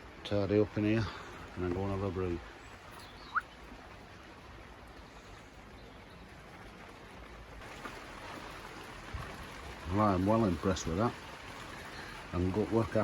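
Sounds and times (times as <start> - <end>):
rain falling steadily: 0.0 - 13.0.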